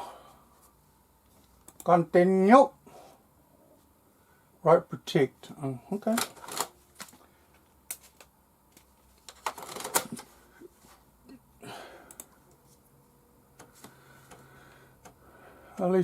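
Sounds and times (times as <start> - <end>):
floppy disks clicking and clattering: 8.9 - 10.4.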